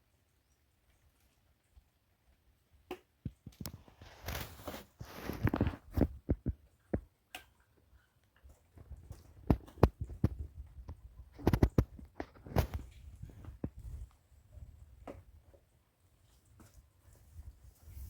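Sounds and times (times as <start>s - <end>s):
wood scraping and shuffling: 3.6s - 6.6s.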